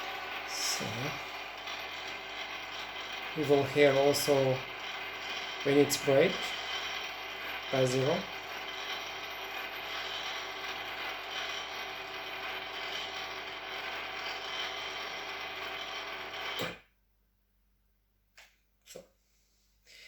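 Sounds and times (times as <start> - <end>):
motor and gearbox humming: 0.0 - 16.8.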